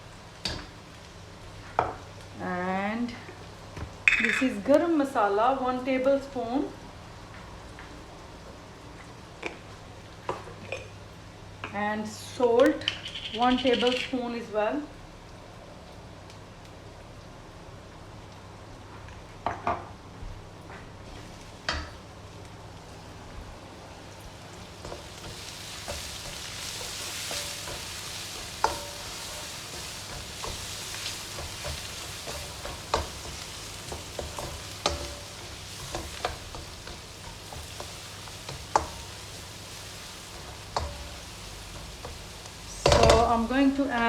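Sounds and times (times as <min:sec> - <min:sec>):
food sizzling in oil: 0:00.0 - 0:44.0
spoon knocking and scraping pan: 0:03.8 - 0:04.5, 0:24.8 - 0:43.8.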